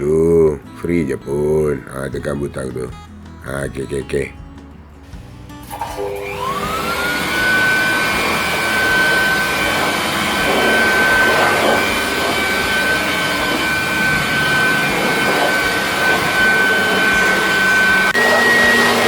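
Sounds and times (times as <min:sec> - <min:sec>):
air blower motor whine: 0:05.1 - 0:19.0.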